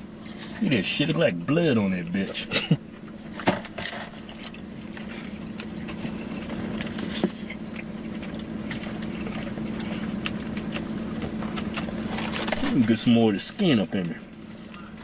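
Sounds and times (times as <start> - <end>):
car engine idling: 0.0 - 15.0.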